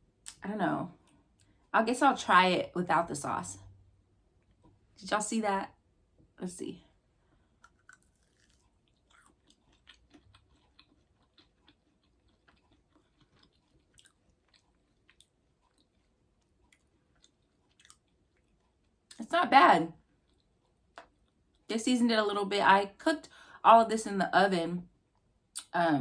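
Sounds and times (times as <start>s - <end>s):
faint chewing mouth clicks: 7.6s - 19.2s.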